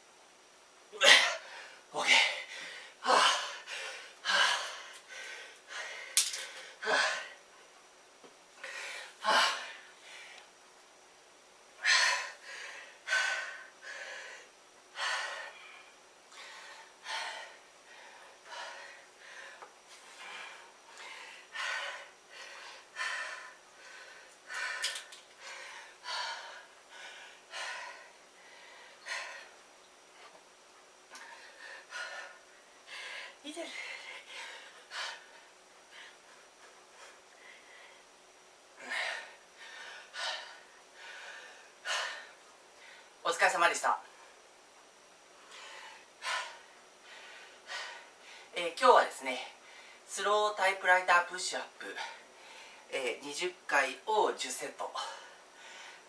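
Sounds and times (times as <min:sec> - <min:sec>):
man breathing hard: 0:01.0 - 0:07.4, 0:08.6 - 0:10.5, 0:11.8 - 0:29.6, 0:31.1 - 0:43.2, 0:45.4 - 0:48.5, 0:55.0 - 0:56.0.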